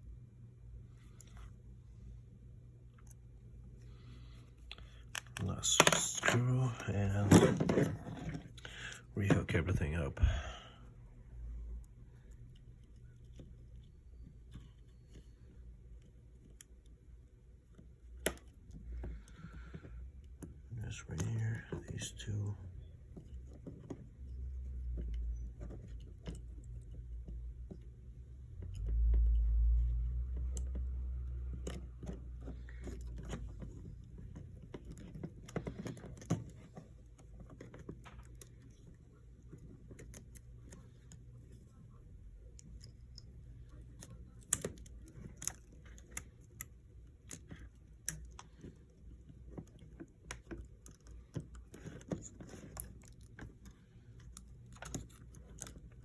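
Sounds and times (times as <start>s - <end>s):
small clicks and taps of tools: 17.7s - 22.5s, 42.4s - 56.0s.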